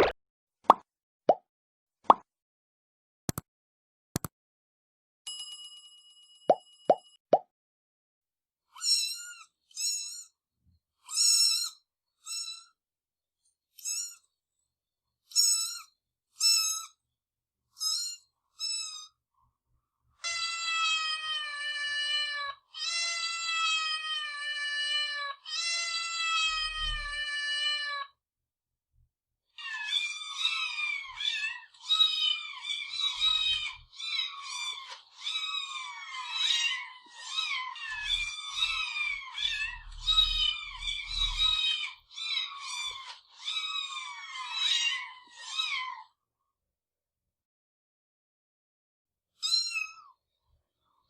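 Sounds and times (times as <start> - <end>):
cat meowing: 20.2 - 28.2, 29.6 - 46.1, 49.4 - 50.2.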